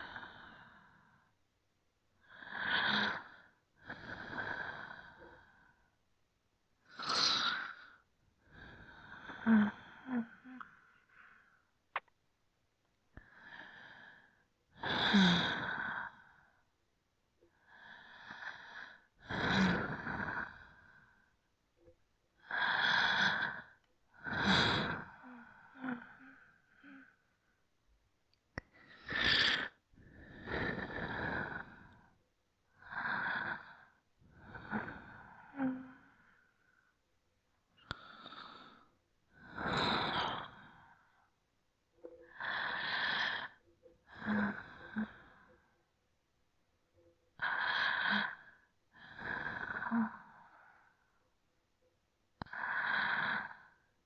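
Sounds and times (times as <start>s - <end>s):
person breathing deeply: 28.6s - 32.1s, 42.3s - 45.7s.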